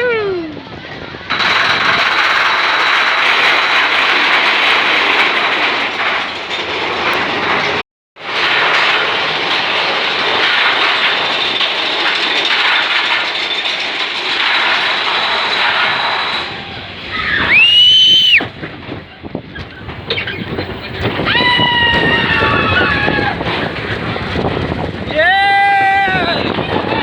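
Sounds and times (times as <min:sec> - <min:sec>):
wind over microphone: 0:00.0 - 0:05.6, 0:15.9 - 0:27.0.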